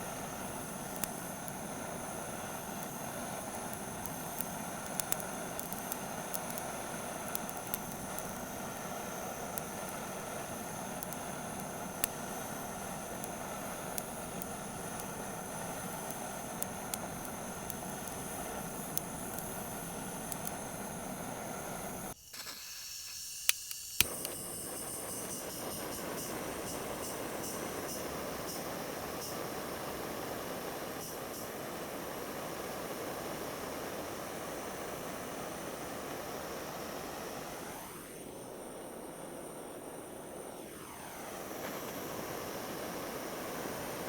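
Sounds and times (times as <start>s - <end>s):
firewood crackling: 0.0s - 22.2s
sharp clicks: 0.0s - 22.2s
gas torch flame hissing: 0.0s - 44.0s.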